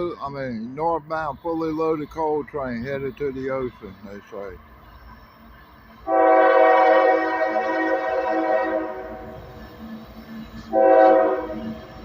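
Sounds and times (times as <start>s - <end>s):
diesel locomotive air horn: 6.0s - 9.4s, 10.6s - 11.9s.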